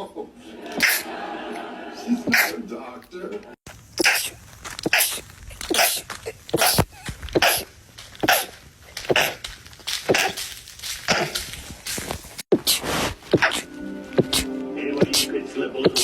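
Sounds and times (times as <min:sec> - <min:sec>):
person sneezing stifled: 0:00.8 - 0:01.1, 0:02.2 - 0:02.6, 0:04.0 - 0:09.4, 0:10.1 - 0:10.4, 0:11.1 - 0:11.4, 0:12.5 - 0:16.0.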